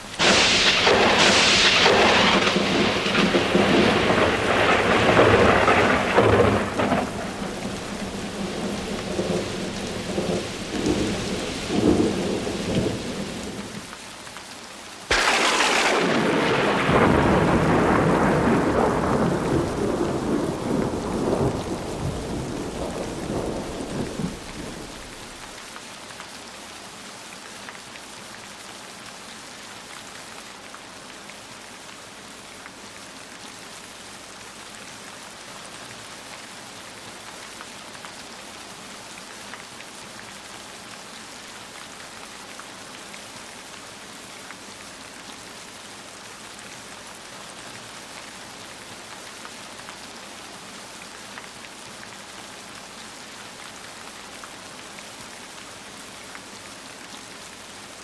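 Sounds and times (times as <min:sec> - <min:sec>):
thunder rumbling: 0:00.0 - 0:13.9, 0:15.1 - 0:25.6
heavy rain: 0:00.0 - 0:58.0
sharp thunderclap: 0:00.1 - 0:13.9, 0:15.1 - 0:25.6.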